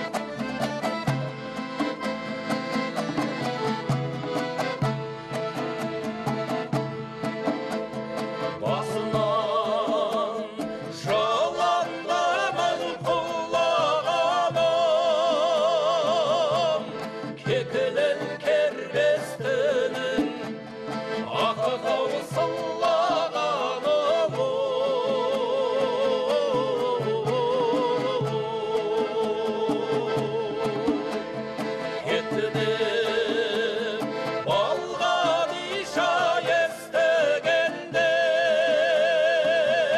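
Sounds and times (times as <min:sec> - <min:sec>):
person singing with vibrato: 0:08.5 - 0:39.9.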